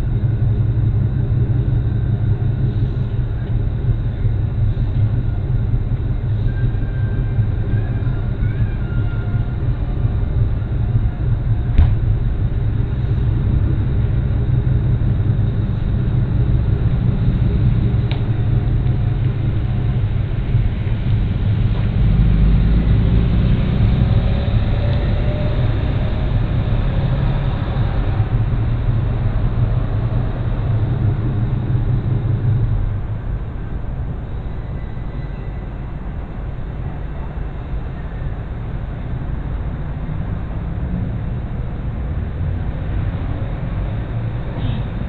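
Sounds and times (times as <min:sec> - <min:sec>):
vehicle engine idling: 0:00.0 - 0:45.0.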